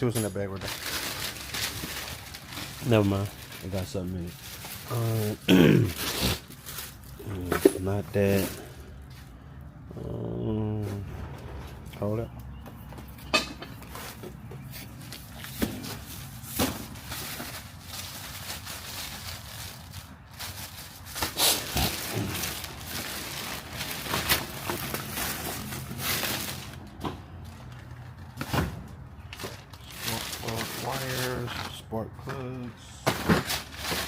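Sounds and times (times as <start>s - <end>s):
plastic bags rustling: 0.0s - 9.7s, 13.1s - 34.0s
parts knocking and clunking: 11.0s - 14.7s.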